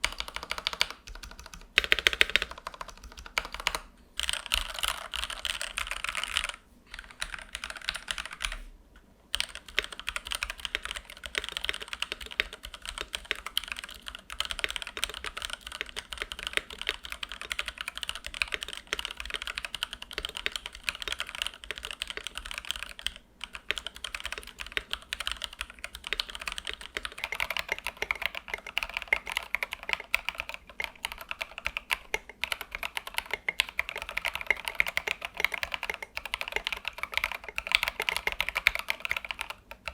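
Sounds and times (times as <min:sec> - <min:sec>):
mechanical keyboard typing: 0:00.0 - 0:08.6, 0:09.3 - 0:39.9.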